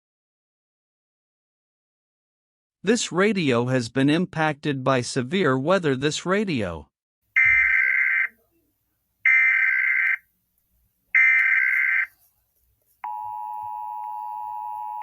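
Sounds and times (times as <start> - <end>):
two-tone attention signal: 7.4 - 8.3
warbling data tone bursts: 7.4 - 8.3.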